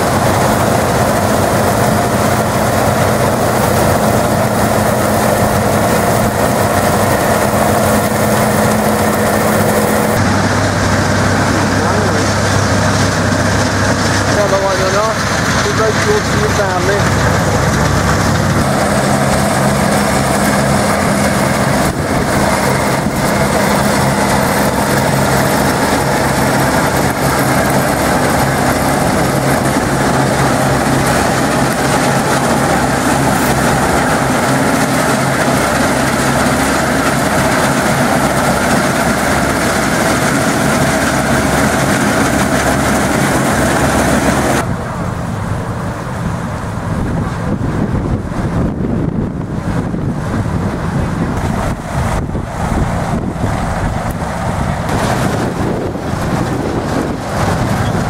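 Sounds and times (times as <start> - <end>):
farm machinery engine running: 0.0 - 58.0
wind on microphone: 17.1 - 58.0.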